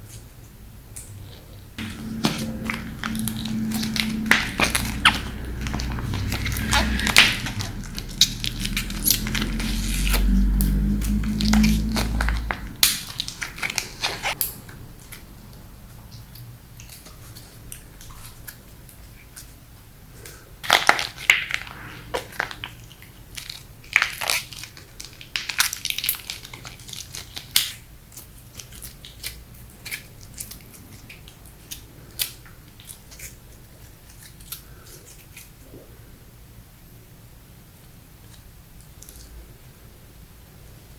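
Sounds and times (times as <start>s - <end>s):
slime popping and crackling: 1.8s - 15.2s, 20.6s - 33.4s.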